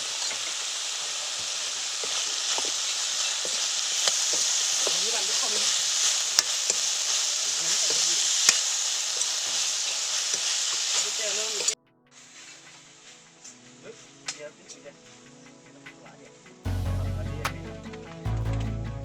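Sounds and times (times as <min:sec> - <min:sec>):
stir-fry sizzling in pan: 0:00.0 - 0:13.6.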